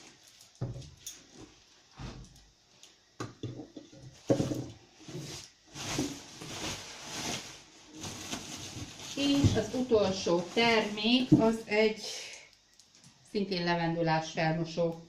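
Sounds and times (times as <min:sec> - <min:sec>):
rustling: 0:04.1 - 0:11.6.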